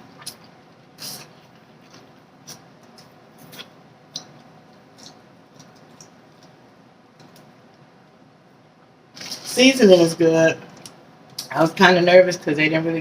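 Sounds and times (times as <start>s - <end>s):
chewing and handling seafood: 0.0s - 7.9s.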